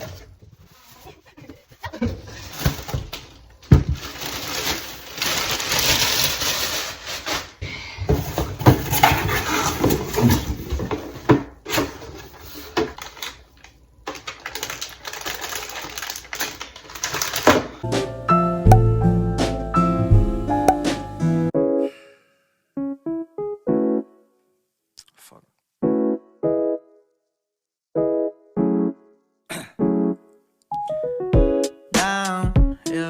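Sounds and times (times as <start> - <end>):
rustling: 0.0 - 7.6, 8.2 - 17.8.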